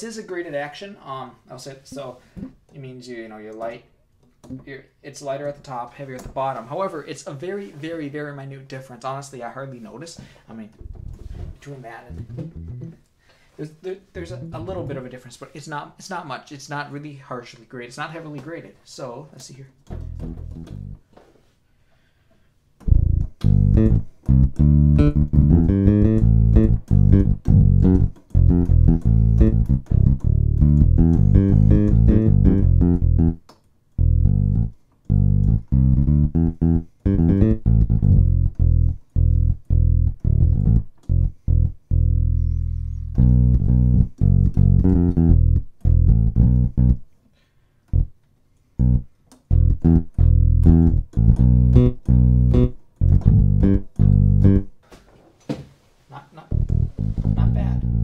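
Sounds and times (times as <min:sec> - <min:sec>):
electric bass line: 0:12.1 - 0:13.0, 0:20.0 - 0:21.0, 0:22.8 - 0:47.1, 0:47.9 - 0:48.2, 0:48.8 - 0:54.8, 0:56.5 - 0:58.0.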